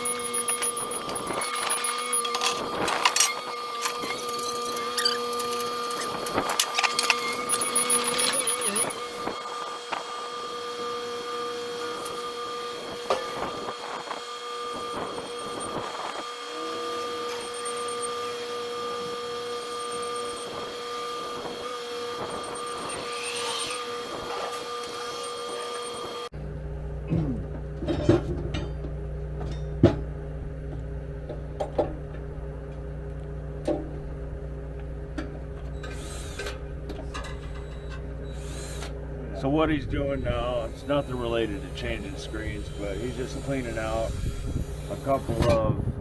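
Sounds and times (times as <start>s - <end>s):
metal parts clanking: 0.0s - 9.0s
machine whining hum: 0.0s - 46.0s.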